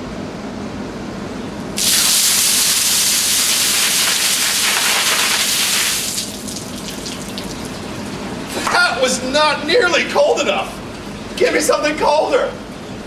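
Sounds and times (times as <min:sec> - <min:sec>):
water gushing splash: 0:01.8 - 0:07.8
water dripping: 0:01.8 - 0:08.2.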